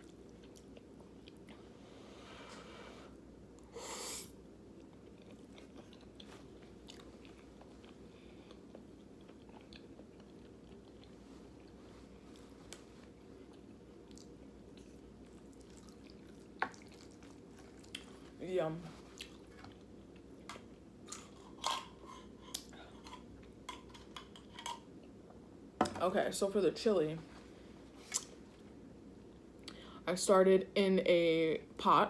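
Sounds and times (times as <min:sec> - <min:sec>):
person chewing food: 0:00.0 - 0:01.8, 0:04.8 - 0:18.4, 0:19.0 - 0:25.2
steady low hum: 0:00.0 - 0:32.0.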